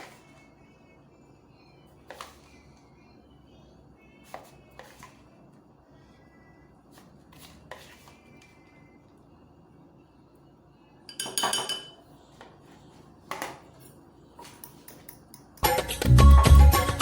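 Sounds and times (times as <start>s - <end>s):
cutlery clinking on dishes: 11.1s - 12.0s, 13.3s - 15.6s
music with heavy bass beat: 15.6s - 17.0s.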